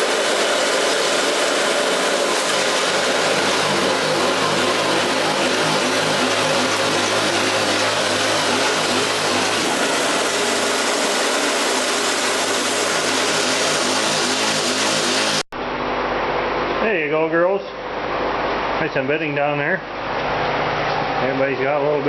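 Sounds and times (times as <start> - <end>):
chopped hay rushing: 0.0 - 15.4
bale chopper running: 0.0 - 15.5.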